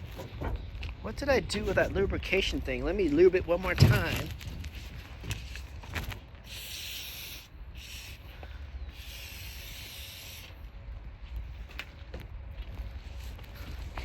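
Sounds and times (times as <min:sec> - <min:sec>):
aerosol spray hissing: 0:06.5 - 0:08.3, 0:08.9 - 0:10.6.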